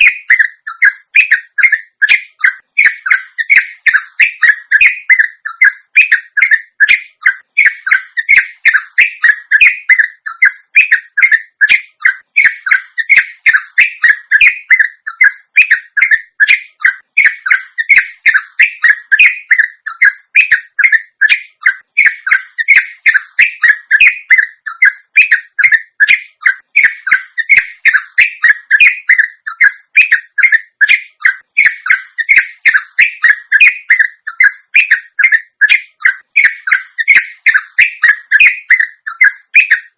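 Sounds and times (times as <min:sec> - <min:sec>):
bird chattering call: 0:00.0 - 0:39.9.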